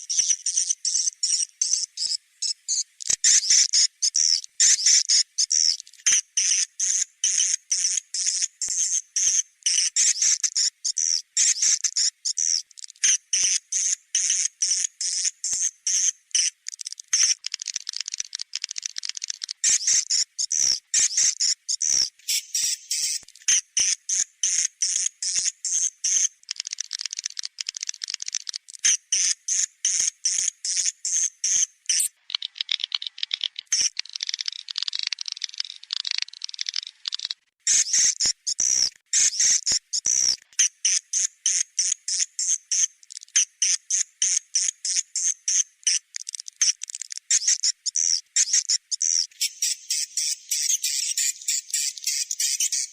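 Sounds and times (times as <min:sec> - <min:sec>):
swiftlet chirps and twitters: 0:19.6 - 0:26.2, 0:29.9 - 0:34.6, 0:37.7 - 0:45.3, 0:47.3 - 0:52.9.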